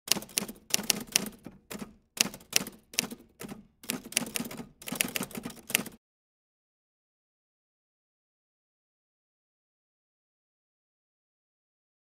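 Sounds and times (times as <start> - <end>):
typewriter key strikes: 0.1 - 6.0.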